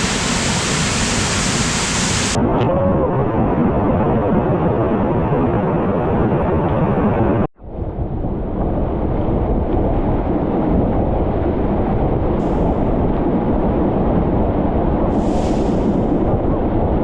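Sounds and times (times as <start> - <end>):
waterfall roaring: 0.0 - 2.4.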